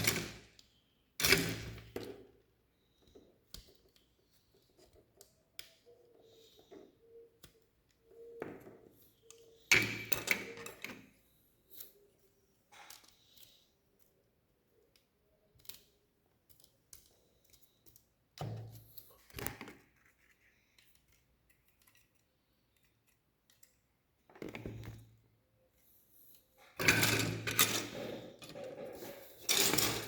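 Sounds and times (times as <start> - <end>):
plastic pieces clicking: 12.8 - 18.4.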